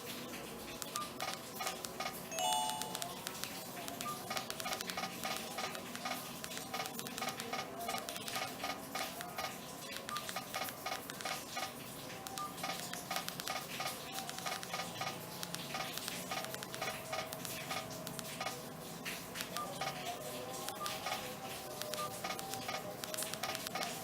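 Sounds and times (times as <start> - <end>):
phone keypad beeps: 0.8 - 3.3
button clicks: 2.4 - 3.3.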